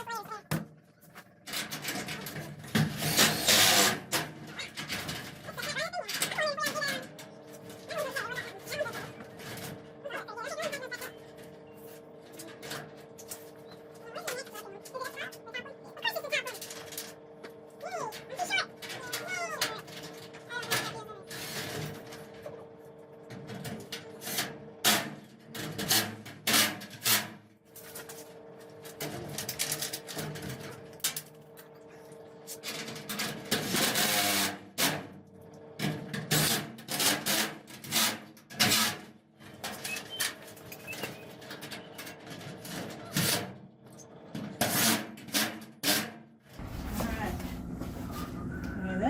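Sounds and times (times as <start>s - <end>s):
knocks and clanks on metal: 0.5s - 9.9s.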